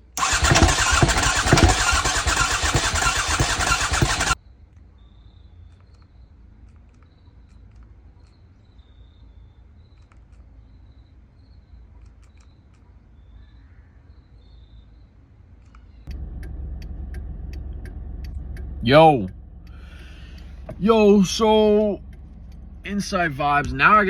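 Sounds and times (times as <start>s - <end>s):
motorcycle engine cranking on starter: 0.0s - 4.4s, 19.6s - 24.0s.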